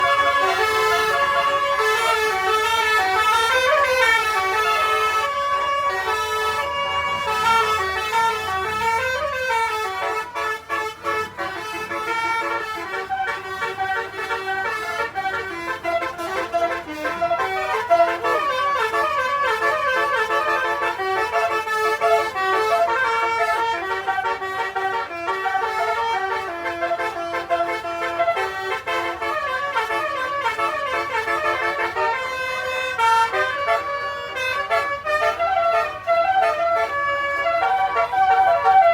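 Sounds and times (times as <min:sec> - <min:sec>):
multi-tone bus horn melody: 0:00.0 - 0:38.9.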